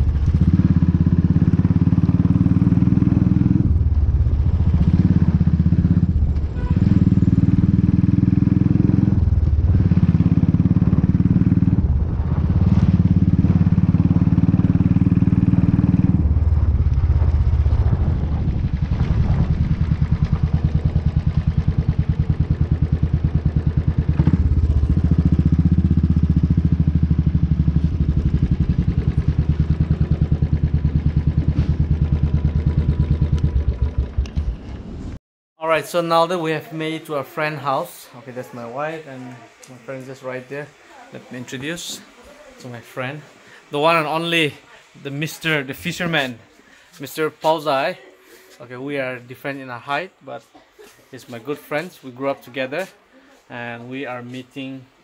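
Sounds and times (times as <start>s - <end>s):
motorcycle engine running: 0.0s - 35.2s.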